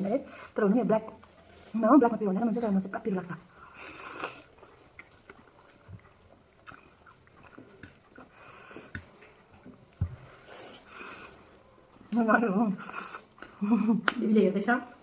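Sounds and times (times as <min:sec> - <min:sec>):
soft chewing with wet clicks: 0:01.1 - 0:01.5, 0:03.3 - 0:14.4.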